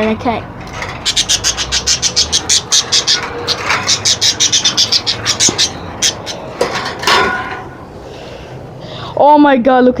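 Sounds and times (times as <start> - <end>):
budgie chirping: 0.9 - 6.6.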